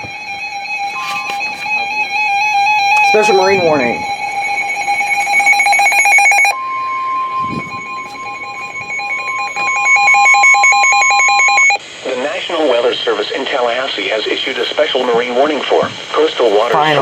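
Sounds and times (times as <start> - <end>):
rapid electronic alarm beeping: 0.0 - 11.8
steady single-pitch alarm tone: 0.0 - 11.8.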